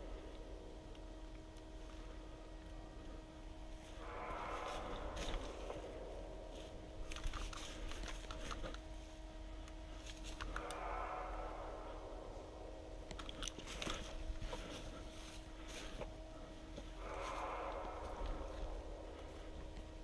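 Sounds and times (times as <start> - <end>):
faint electrical hum: 0.0 - 20.0
soft rustling and crunching: 0.0 - 20.0
sharp clicks and crackles: 6.9 - 9.0, 9.6 - 11.8, 13.0 - 14.8.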